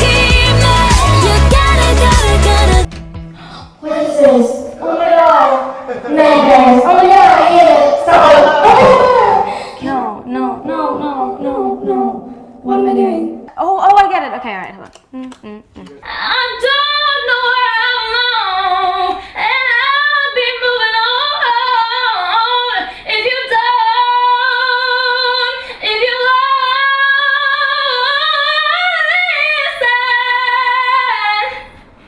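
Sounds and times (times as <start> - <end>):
singer breathing: 3.2 - 3.8, 9.4 - 9.8, 31.5 - 32.0.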